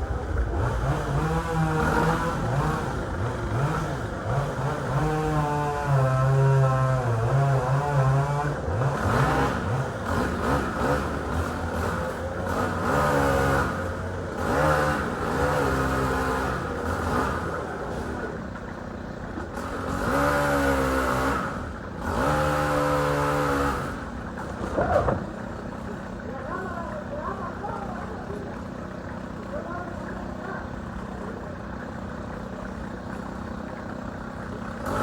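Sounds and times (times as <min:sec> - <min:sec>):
engine revving: 0:00.0 - 0:18.2, 0:19.5 - 0:25.2, 0:34.7 - 0:35.0.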